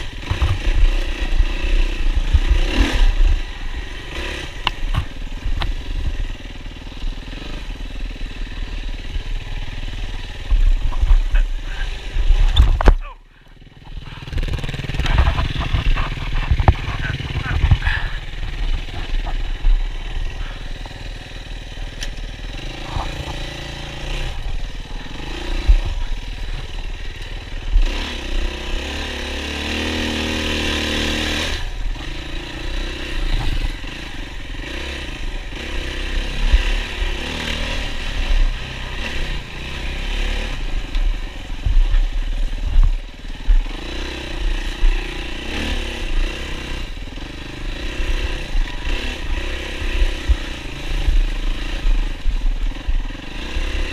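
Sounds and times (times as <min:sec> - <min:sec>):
knocks and clatter from bike: 0:00.0 - 0:03.4, 0:04.6 - 0:06.2, 0:10.4 - 0:13.1, 0:13.8 - 0:21.0, 0:40.8 - 0:46.4
dirt bike engine revving: 0:00.0 - 0:53.9.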